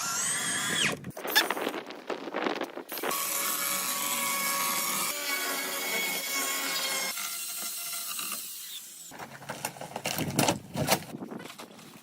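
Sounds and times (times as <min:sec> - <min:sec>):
power tool cutting wood: 0:00.0 - 0:01.0, 0:03.0 - 0:09.1.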